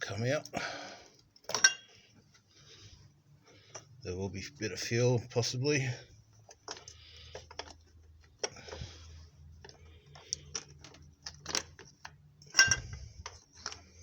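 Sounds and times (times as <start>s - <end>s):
light clicks and knocks of metal parts: 0.0s - 2.6s, 3.4s - 14.0s.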